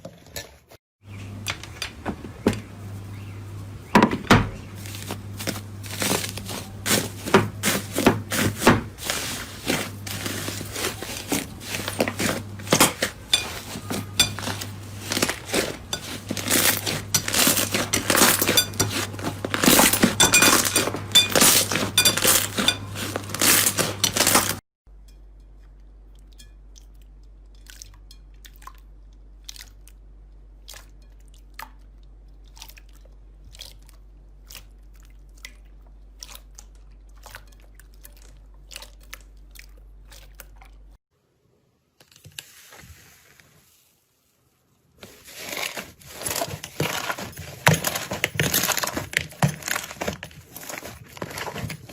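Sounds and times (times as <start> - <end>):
low steady hum: 1.0 - 41.0.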